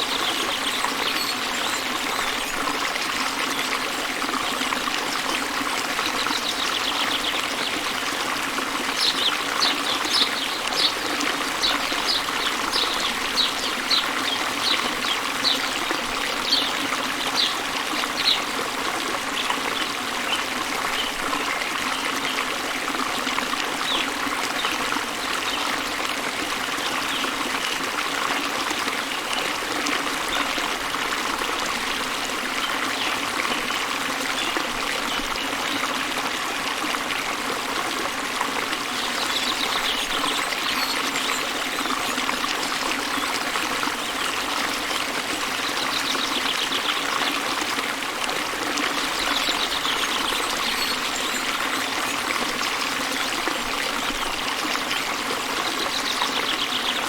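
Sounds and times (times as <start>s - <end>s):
waterfall rushing: 5.4s - 21.1s.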